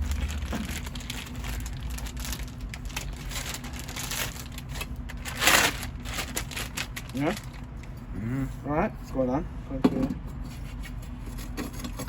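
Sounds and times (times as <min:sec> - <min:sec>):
clicks and crinkling of packaging: 0:00.0 - 0:08.0.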